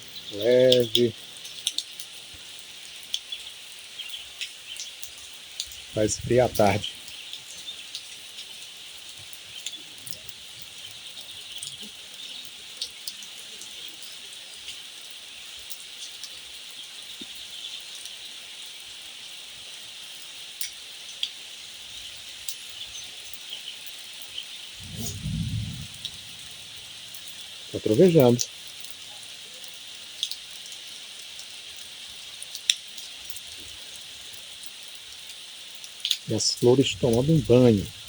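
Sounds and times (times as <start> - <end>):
raindrops ticking: 0.0 - 16.4, 24.8 - 38.0
light rain hissing: 0.0 - 38.0.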